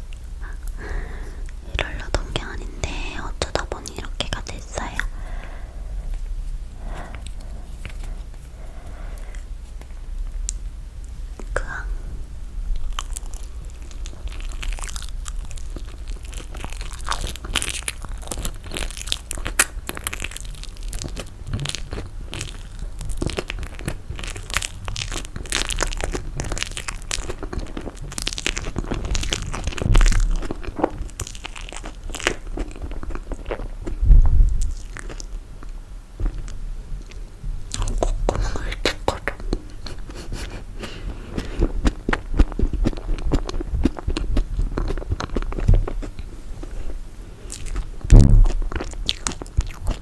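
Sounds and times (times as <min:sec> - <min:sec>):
chewing toasted marshmallow: 0:12.7 - 0:50.0
low thumps: 0:34.0 - 0:34.7, 0:48.0 - 0:48.9.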